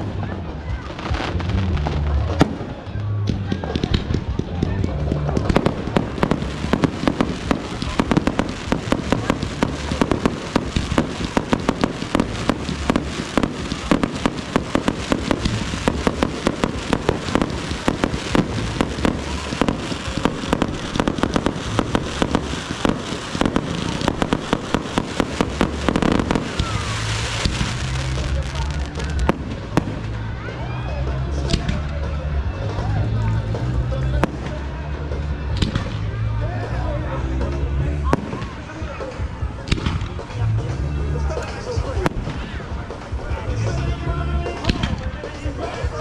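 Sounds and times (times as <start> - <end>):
fireworks bangs and crackles: 0.0 - 46.0.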